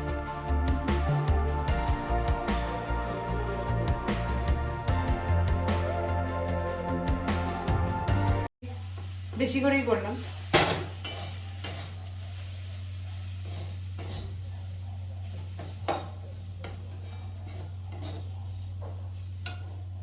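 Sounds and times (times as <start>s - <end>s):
faint sizzle: 8.6s - 20.0s
utensil scraping a pan: 10.5s - 20.0s.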